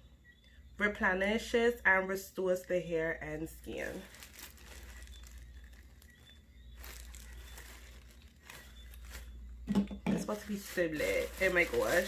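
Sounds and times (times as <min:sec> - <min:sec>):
packaging crinkling and rustling: 0:03.7 - 0:12.0.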